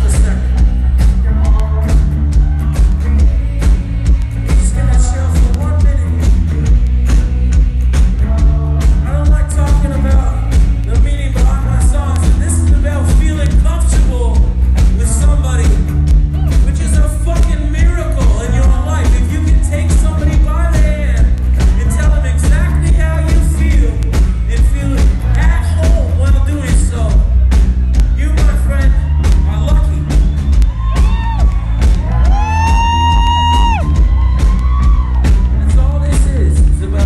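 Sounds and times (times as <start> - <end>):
lead singer singing: 0.0 - 27.3
rock band playing live: 0.0 - 37.0.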